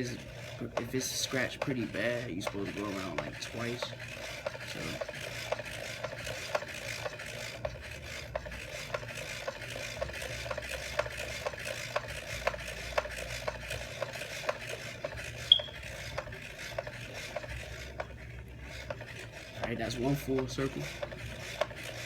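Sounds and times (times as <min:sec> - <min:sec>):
buffing wheel rasping on disc: 0:00.0 - 0:22.0
regular ticks: 0:00.0 - 0:22.0
sharp squeak: 0:15.4 - 0:15.8.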